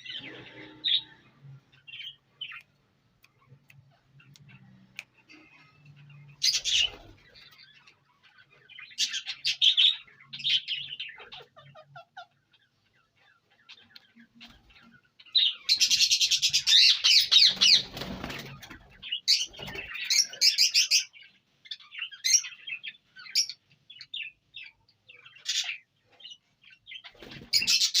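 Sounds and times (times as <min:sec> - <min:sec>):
parakeet shrill calls and squawks: 0:06.3 - 0:23.6, 0:27.0 - 0:28.0.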